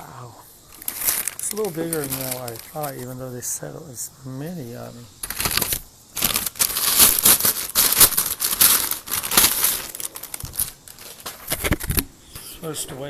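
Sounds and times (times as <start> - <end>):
wrap crinkling and crackling: 0.6 - 3.2, 5.2 - 12.0.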